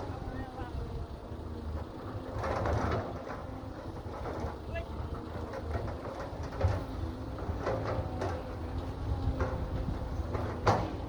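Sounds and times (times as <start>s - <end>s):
knocks and clanks: 10.3s - 11.0s.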